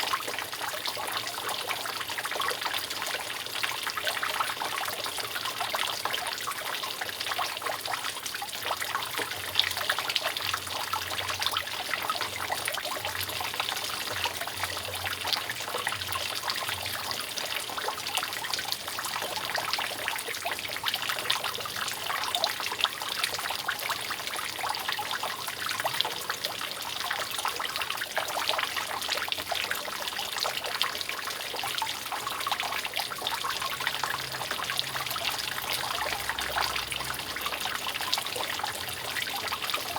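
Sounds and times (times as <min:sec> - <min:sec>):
water dripping off a roof: 0:00.0 - 0:39.9
water trickling: 0:00.0 - 0:39.9.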